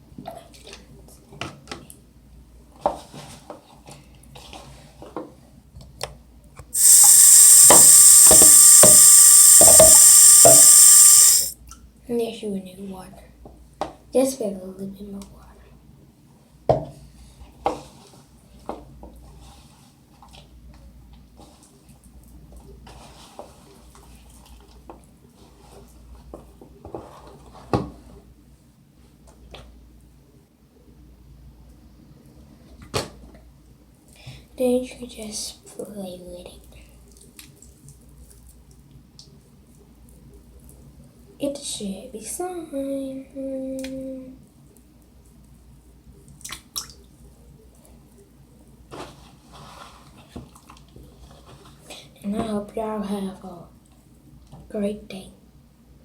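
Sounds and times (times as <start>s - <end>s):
water running from a tap: 6.8s - 11.5s.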